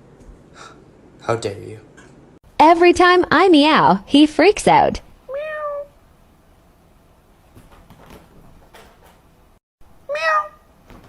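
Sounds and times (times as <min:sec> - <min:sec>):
cat meowing: 0:05.3 - 0:05.9, 0:10.1 - 0:10.7
faint knocks and shuffling: 0:07.4 - 0:09.6, 0:10.7 - 0:11.0.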